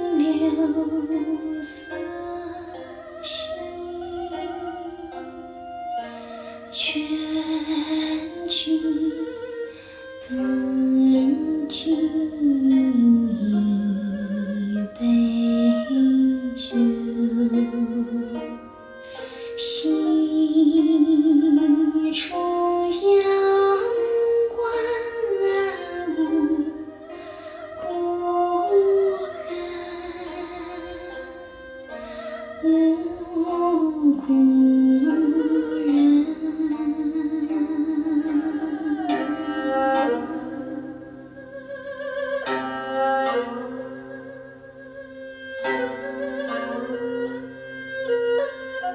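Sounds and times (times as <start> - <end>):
woman singing with vibrato: 0.0 - 4.4, 10.3 - 18.2, 19.6 - 26.9, 27.8 - 31.4
bowed string melody: 0.0 - 48.9
instrumental accompaniment: 0.0 - 48.9
plucked string notes: 0.0 - 48.9.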